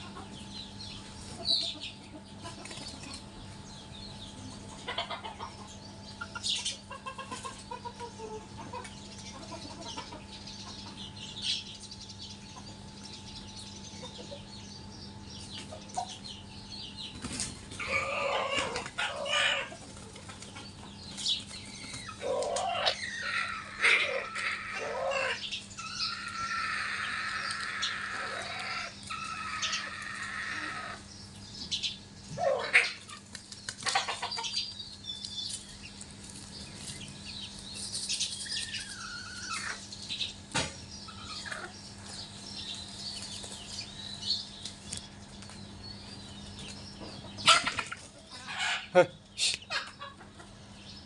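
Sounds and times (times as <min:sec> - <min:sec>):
chicks cheeping: 0:00.0 - 0:51.0
steady low hum: 0:00.0 - 0:51.0
hen calling: 0:17.8 - 0:19.9, 0:21.7 - 0:31.1, 0:32.3 - 0:33.2.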